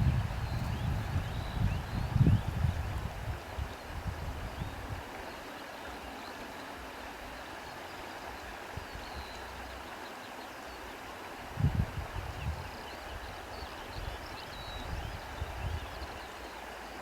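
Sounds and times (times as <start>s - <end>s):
wind buffeting microphone: 0.0s - 5.1s, 11.5s - 16.2s.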